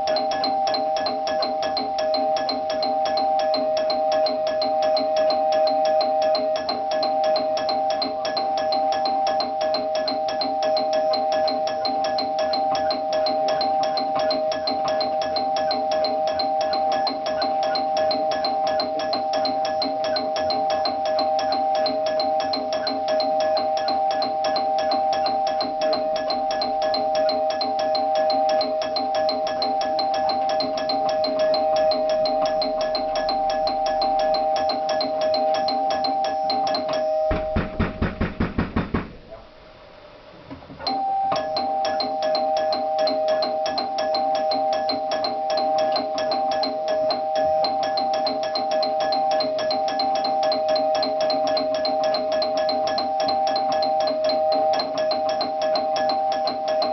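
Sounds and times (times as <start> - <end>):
doorbell ringing: 0.0 - 39.0.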